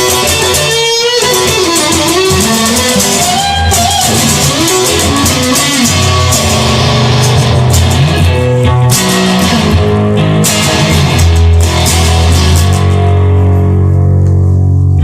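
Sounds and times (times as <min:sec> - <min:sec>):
bass and drums: 0:00.0 - 0:15.0
electric guitar lead bending notes: 0:00.0 - 0:15.0.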